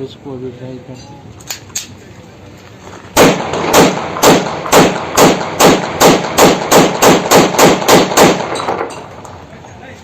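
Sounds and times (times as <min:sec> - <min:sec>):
pistol shots: 0:03.2 - 0:09.0.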